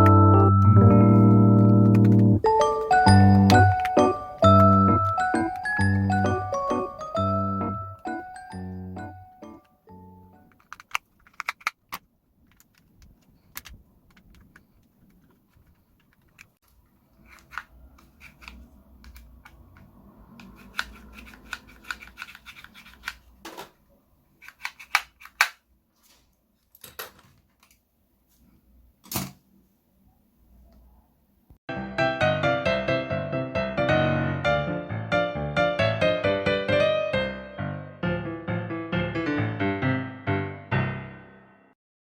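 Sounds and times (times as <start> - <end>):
plastic parts clicking: 10.5 - 23.8, 24.4 - 25.6
plastic parts scraping: 10.5 - 23.8, 24.4 - 27.8.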